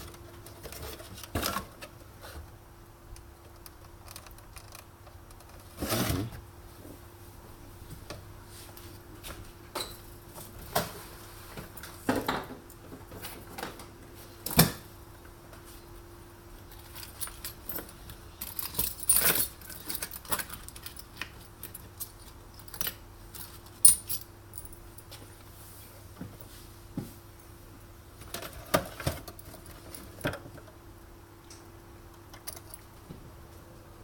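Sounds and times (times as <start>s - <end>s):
metal parts clinking and rattling: 16.7s - 24.8s
metal parts jangling: 16.8s - 24.8s.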